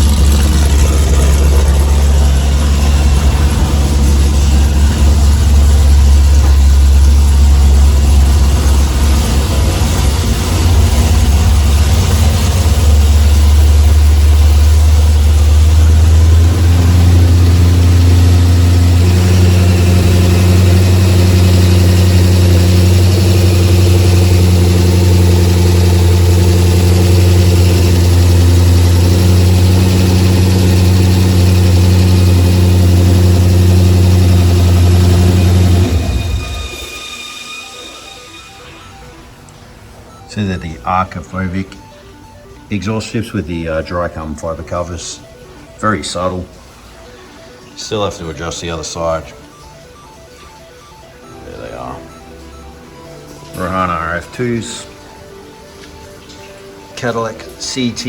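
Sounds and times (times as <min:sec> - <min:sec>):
car engine idling: 0:00.0 - 0:37.2.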